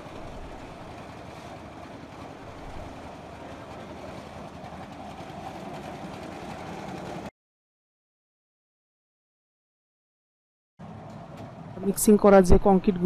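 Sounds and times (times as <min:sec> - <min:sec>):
concrete mixer running: 0:00.0 - 0:07.3.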